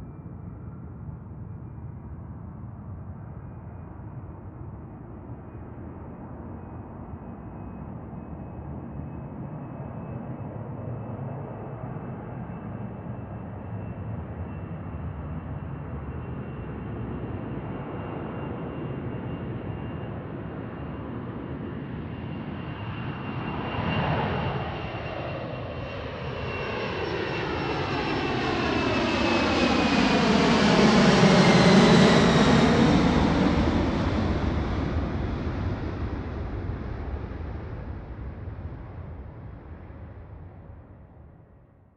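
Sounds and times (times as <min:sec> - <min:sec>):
jet airliner engines roaring: 0:00.0 - 0:40.8.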